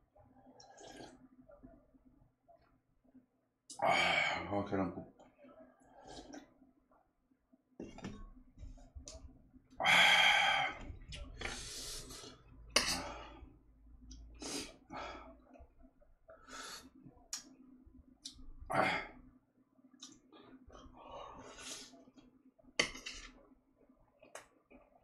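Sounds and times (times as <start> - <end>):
breathy mouth sounds: 0.4 - 1.8, 5.2 - 6.6, 7.8 - 17.6
person eating: 22.8 - 23.4.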